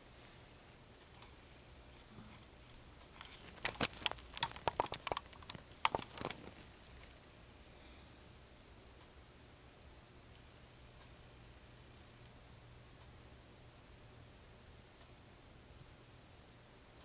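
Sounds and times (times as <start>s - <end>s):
sharp clicks and crackles: 1.0s - 7.2s.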